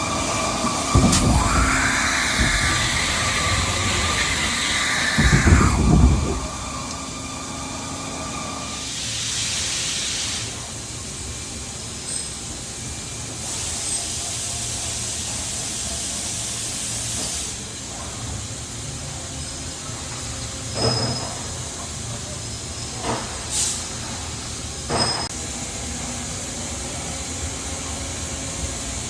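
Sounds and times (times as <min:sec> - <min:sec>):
machine hum: 0:00.0 - 0:08.8
machine whine: 0:00.0 - 0:08.9
burst of hiss: 0:00.9 - 0:06.9, 0:08.8 - 0:10.7
heavy machine clunk: 0:00.9 - 0:07.2.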